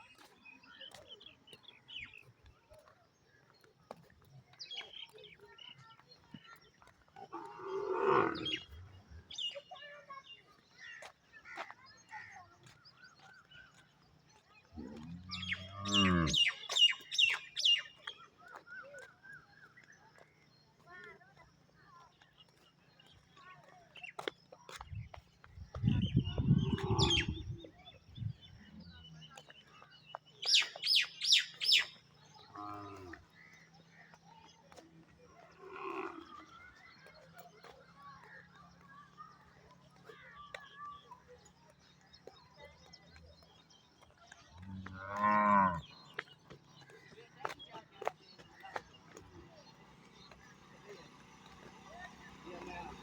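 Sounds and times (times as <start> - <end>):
birds chirping: 0.0 - 53.0
loud animal call: 14.8 - 16.6, 26.5 - 27.4.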